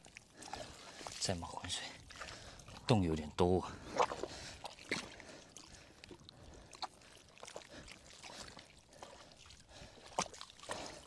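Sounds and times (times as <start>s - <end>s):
hands splashing in muddy water: 3.9s - 5.2s.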